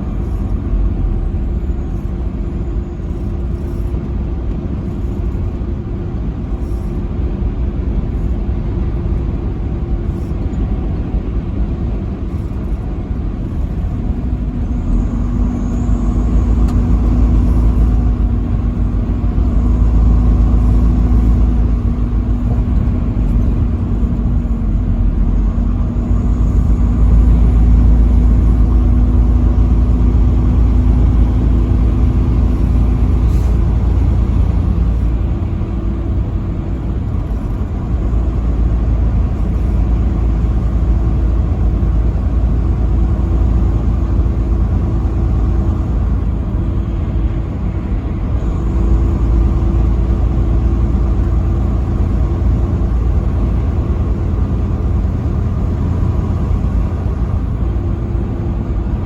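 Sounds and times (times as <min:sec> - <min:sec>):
vehicle engine and tyre noise: 0:00.0 - 0:59.0.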